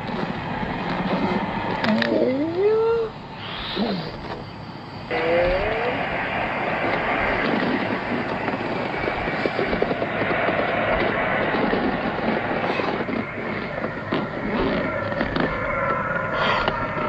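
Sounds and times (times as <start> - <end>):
stomach growling: 3.4 - 4.4, 5.1 - 17.0.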